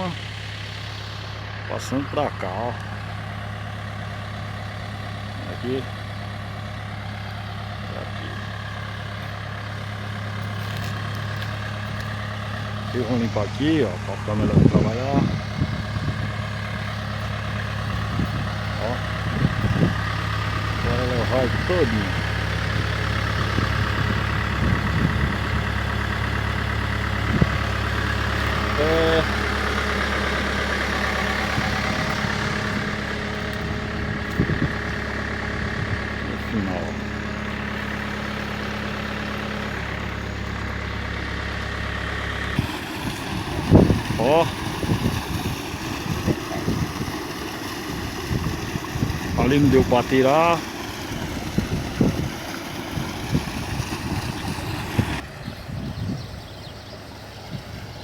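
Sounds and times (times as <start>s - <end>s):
diesel engine running: 0.0s - 58.0s
low engine knocks: 14.0s - 36.2s.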